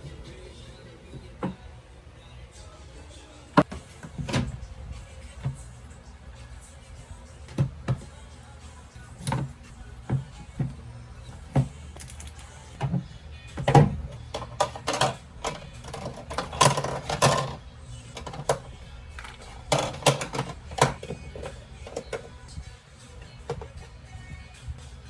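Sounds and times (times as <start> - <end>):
rattling and rustling: 13.6 - 22.6.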